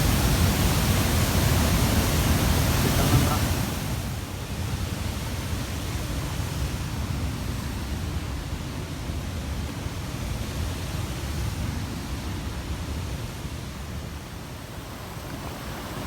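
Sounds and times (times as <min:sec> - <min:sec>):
waterfall roaring: 0:00.0 - 0:04.5, 0:13.6 - 0:16.0.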